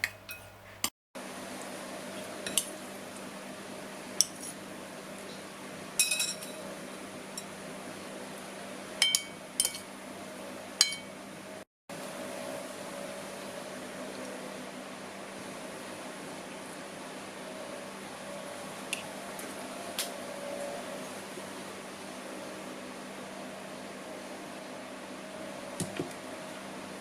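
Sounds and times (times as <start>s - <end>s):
utensil clinking against dish: 6.0s - 6.6s.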